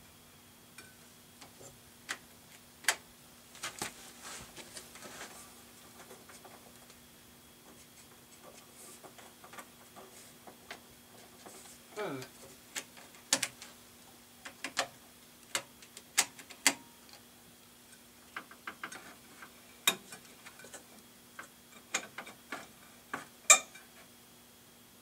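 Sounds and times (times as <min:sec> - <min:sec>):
faint steady hum: 0:00.0 - 0:25.0
clicks and taps of tools: 0:18.4 - 0:23.8.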